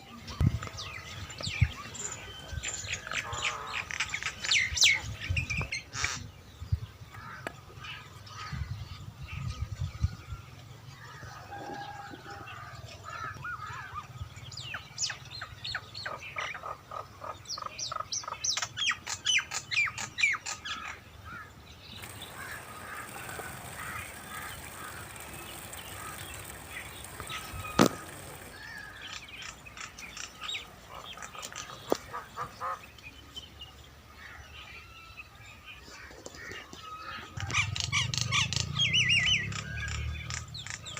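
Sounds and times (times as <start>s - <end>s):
birds chirping and squawking: 0.0s - 40.9s
steady high hiss: 22.0s - 32.2s.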